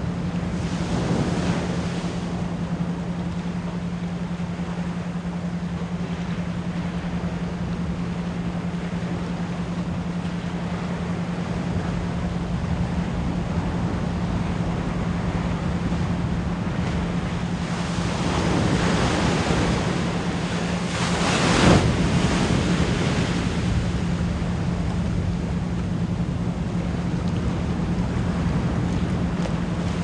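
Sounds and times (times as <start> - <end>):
ocean waves: 0.0 - 30.0.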